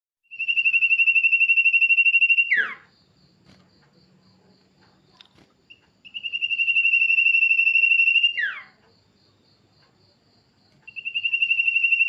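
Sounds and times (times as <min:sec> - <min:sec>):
songbird trilling: 0:05.7 - 0:08.8, 0:10.8 - 0:12.0.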